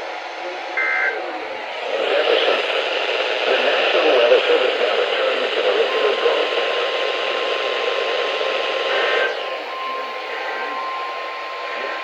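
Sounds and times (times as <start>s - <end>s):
radio static hiss: 0.4s - 12.0s
steady high alarm tone: 5.9s - 12.0s.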